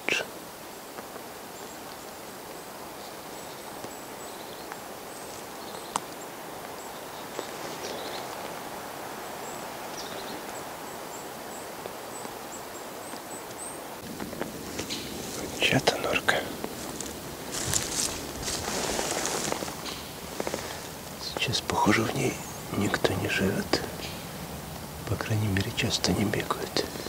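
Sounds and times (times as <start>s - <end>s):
breeze rustling trees: 0.0s - 27.0s.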